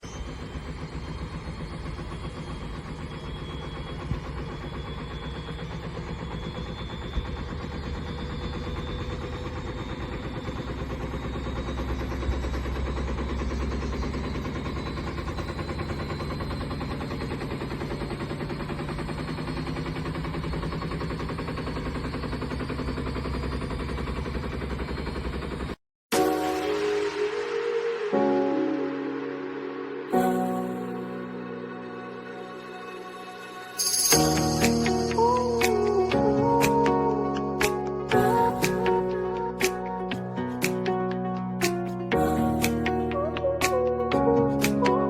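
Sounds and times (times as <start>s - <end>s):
fast mechanical rattling: 0.2s - 25.8s.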